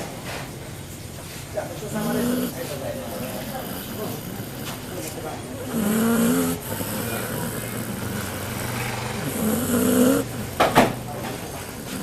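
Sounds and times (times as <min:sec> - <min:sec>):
steady low hum: 0:00.0 - 0:12.0
dog snoring: 0:01.2 - 0:12.0
sharp knocks: 0:10.6 - 0:11.4.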